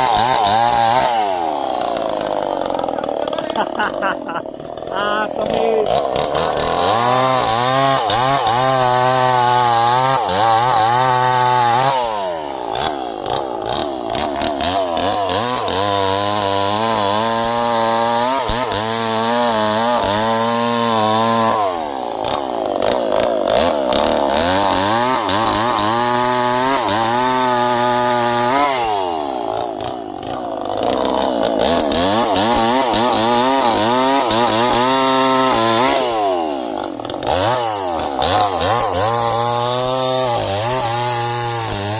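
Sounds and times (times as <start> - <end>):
chainsaw cutting trees: 0.0 - 41.9.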